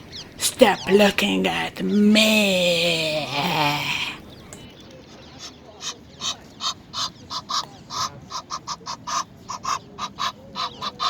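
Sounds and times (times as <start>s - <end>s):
waterfowl calling: 5.4s - 11.0s.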